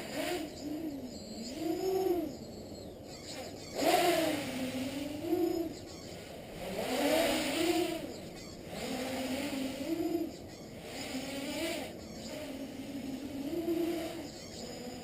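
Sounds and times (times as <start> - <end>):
quadcopter propellers whining: 0.0 - 15.0.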